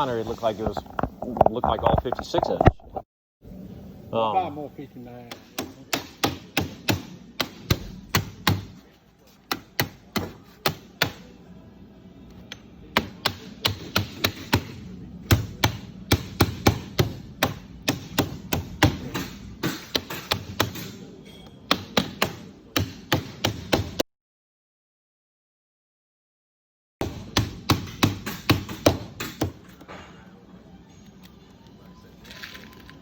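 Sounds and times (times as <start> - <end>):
sharp knocks on sheet metal: 13.0 - 21.0, 27.0 - 29.6.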